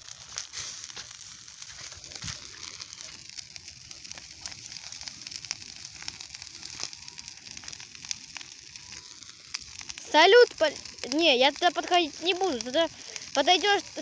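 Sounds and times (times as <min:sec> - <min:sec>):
bonfire crackling and popping: 0:00.0 - 0:14.0.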